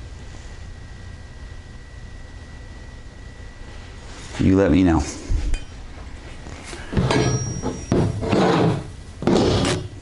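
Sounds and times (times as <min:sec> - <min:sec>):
tools sliding and rubbing: 0:06.5 - 0:09.9
brief high ring: 0:07.0 - 0:08.0.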